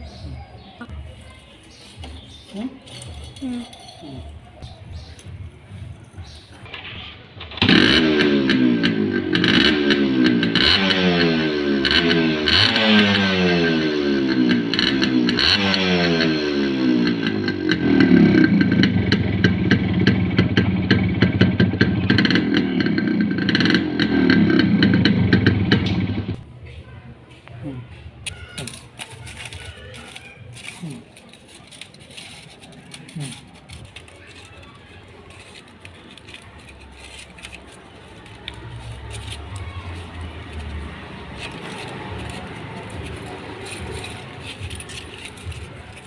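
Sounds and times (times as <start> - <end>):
motorcycle engine at low revs: 7.4 - 26.4
sharp irregular ticks: 28.3 - 46.0.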